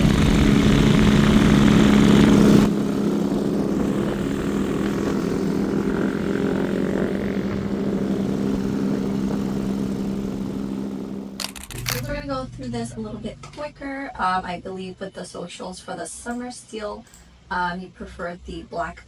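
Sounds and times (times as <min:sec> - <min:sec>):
motor engine droning: 0:00.0 - 0:14.9.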